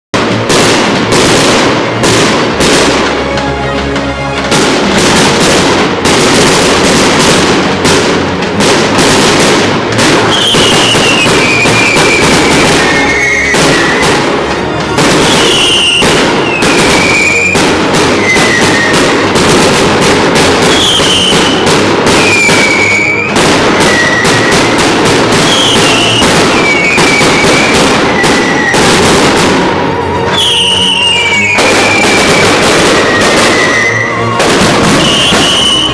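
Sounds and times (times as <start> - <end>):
fireworks banging and crackling: 0.1 - 35.9.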